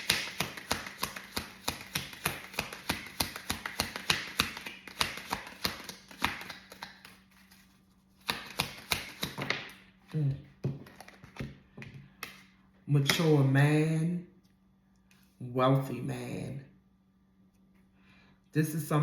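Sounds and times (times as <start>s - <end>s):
cards being shuffled by hand: 0.0s - 12.5s.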